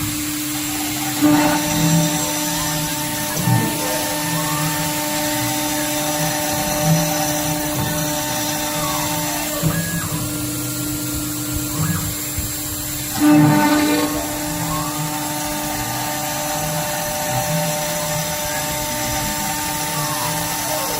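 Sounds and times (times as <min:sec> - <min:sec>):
router spindle milling metal: 0:00.0 - 0:20.9.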